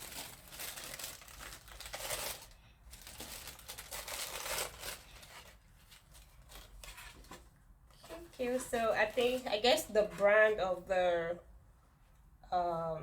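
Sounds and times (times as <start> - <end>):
paper packaging crinkling: 0.0 - 10.4.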